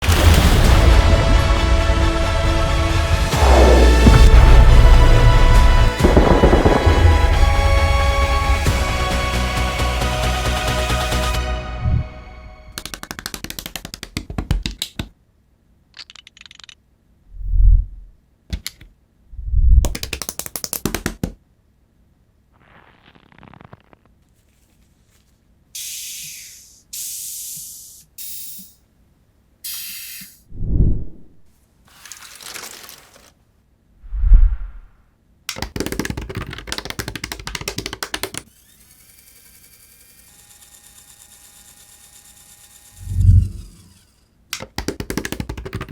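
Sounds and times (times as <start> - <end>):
deep thuds: 3.3 - 8.4
fast sharp clicking: 12.8 - 15.1, 19.8 - 21.4, 35.5 - 40.1, 43.0 - 45.9.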